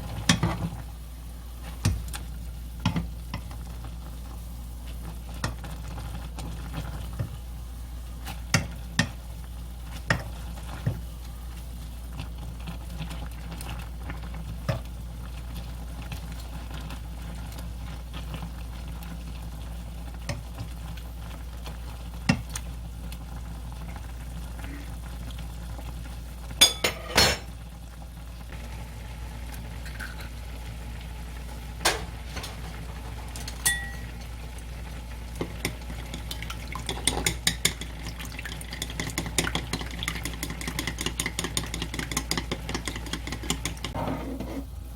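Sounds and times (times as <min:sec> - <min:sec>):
utensils clinking against pot: 0:26.6 - 0:27.5, 0:31.8 - 0:32.8, 0:33.4 - 0:34.2, 0:36.8 - 0:38.0.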